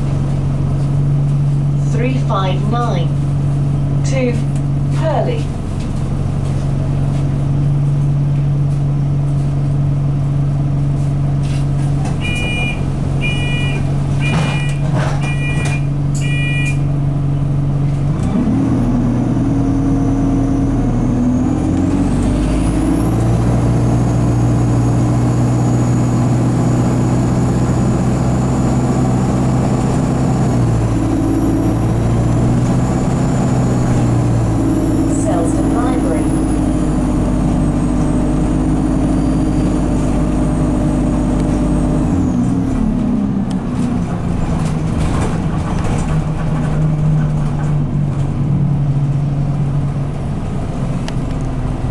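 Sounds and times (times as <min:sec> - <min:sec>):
bus engine idling and pulling away: 0:00.0 - 0:51.9
short electronic beeps: 0:12.2 - 0:16.9.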